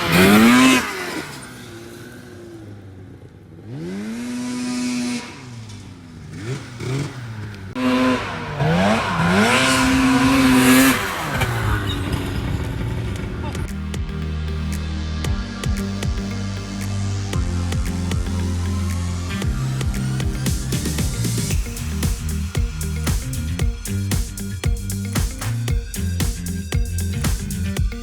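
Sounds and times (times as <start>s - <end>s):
motorcycle engine revving hard: 0.0s - 14.2s, 15.2s - 25.5s.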